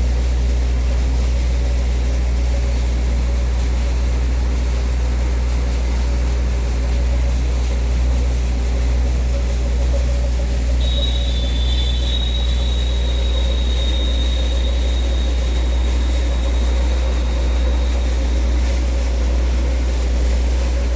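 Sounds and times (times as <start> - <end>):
boring rig humming: 1.8 - 20.9
thin high whine: 10.7 - 20.9.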